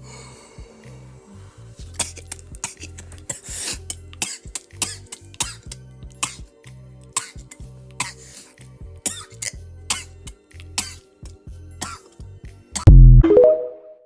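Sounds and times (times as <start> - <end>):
background music with bass line: 12.8 - 13.8.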